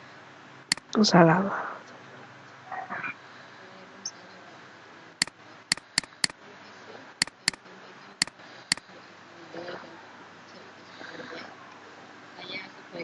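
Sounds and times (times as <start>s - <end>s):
faint room hiss: 3.2s - 13.0s
short sharp clicks: 5.7s - 6.4s, 7.2s - 7.6s.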